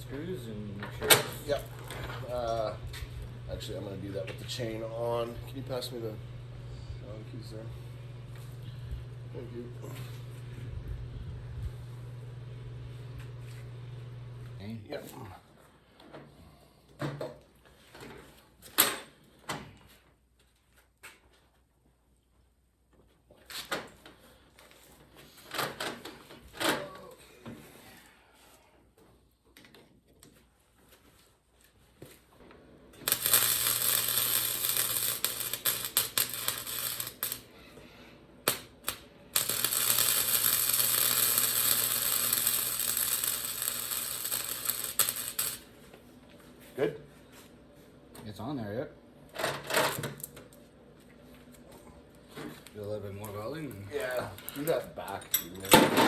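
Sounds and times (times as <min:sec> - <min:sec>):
welding arc crackling and hissing: 0:00.0 - 0:10.5, 0:33.0 - 0:37.6, 0:38.4 - 0:45.8
steady low hum: 0:00.0 - 0:14.9
welding arc strikes: 0:33.0 - 0:37.5, 0:38.4 - 0:45.8.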